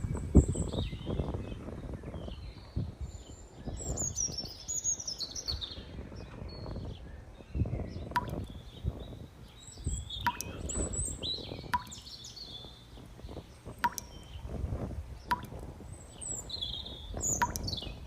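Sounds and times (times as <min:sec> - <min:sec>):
birds chirping: 0:00.0 - 0:18.0
sharp click-like plop: 0:08.2 - 0:08.5, 0:10.2 - 0:10.6, 0:11.8 - 0:12.0, 0:13.8 - 0:14.1, 0:15.3 - 0:15.6, 0:17.4 - 0:17.8.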